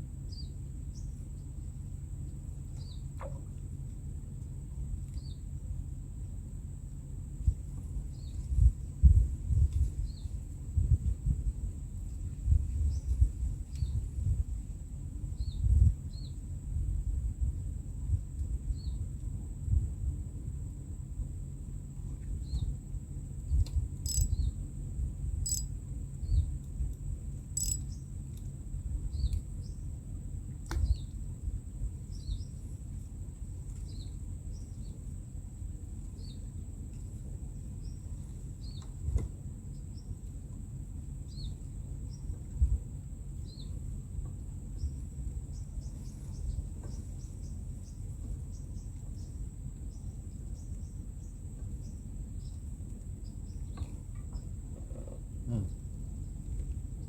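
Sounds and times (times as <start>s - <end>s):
insects droning: 0.0s - 57.0s
steady low rumble: 0.0s - 57.0s
insect chirps: 20.9s - 32.9s, 37.6s - 38.9s, 44.7s - 56.4s
sharp clicks: 24.1s - 24.3s, 27.6s - 27.8s.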